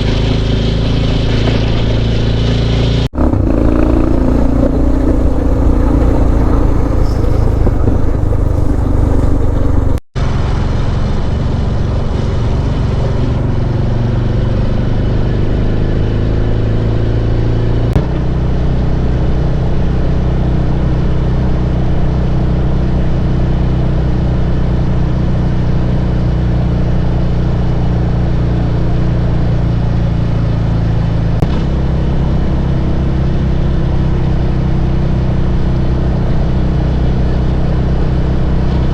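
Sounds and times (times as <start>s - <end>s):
motorcycle engine cruising: 0.0s - 10.1s
wind and road noise: 0.0s - 38.9s.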